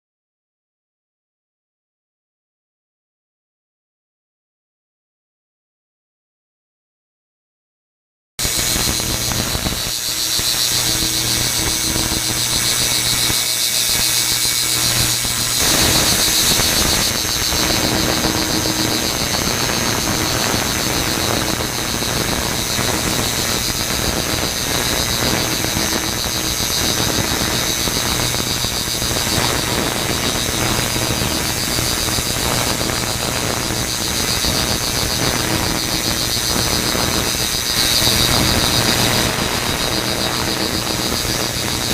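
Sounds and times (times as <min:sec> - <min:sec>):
crackling hiss of cleaning bath: 0:08.4 - 0:41.9
high-pitched whining tones: 0:08.4 - 0:41.9
steady mains hum: 0:08.4 - 0:41.9.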